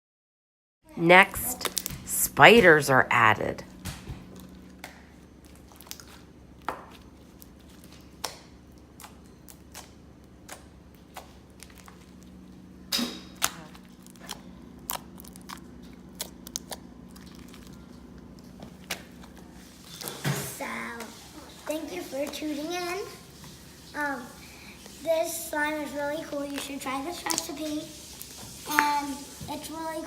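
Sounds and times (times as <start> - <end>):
slime squishing: 4.3 - 12.4, 13.4 - 20.2.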